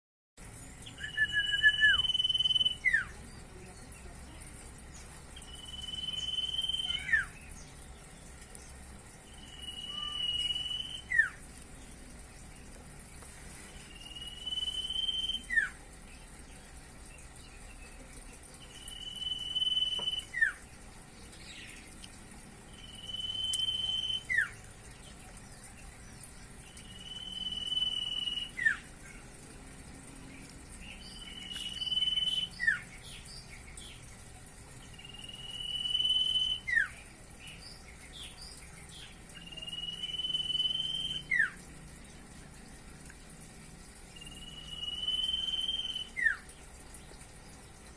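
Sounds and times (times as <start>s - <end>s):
bird whistling song: 0.8s - 3.2s, 5.4s - 7.5s, 9.3s - 11.4s, 13.9s - 15.8s, 18.6s - 20.6s, 22.7s - 24.6s, 26.6s - 28.9s, 30.8s - 33.2s, 35.0s - 37.0s, 38.2s - 41.6s, 44.1s - 46.5s.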